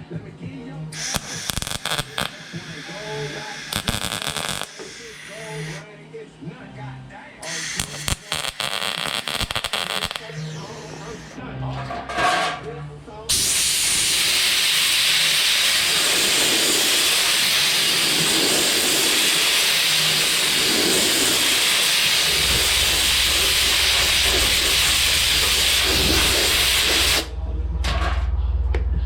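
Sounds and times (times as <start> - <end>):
welding arc hissing: 1.0 - 5.8, 7.4 - 11.4, 13.3 - 27.3.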